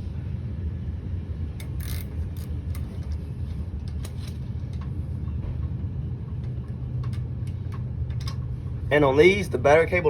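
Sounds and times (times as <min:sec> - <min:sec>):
wrench metallic clicks: 0:01.6 - 0:02.9.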